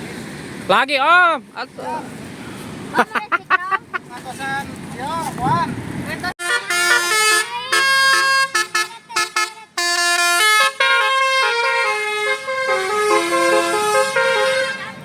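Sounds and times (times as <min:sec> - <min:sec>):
bus horn playing a tune: 0:06.4 - 0:15.0.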